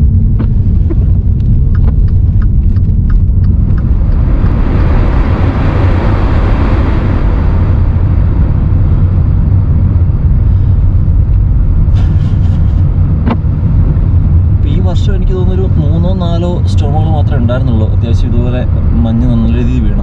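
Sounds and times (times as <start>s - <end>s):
car driving on snow: 0.0s - 20.0s.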